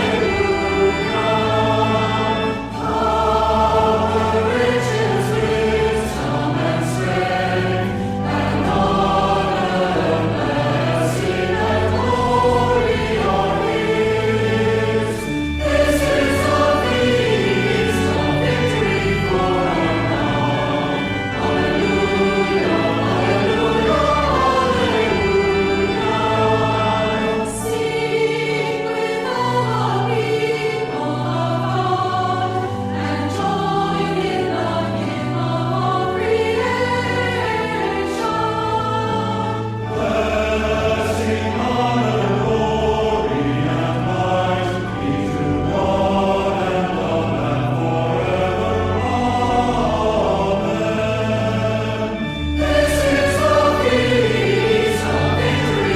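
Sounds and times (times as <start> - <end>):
choir singing a hymn: 0.0 - 55.9.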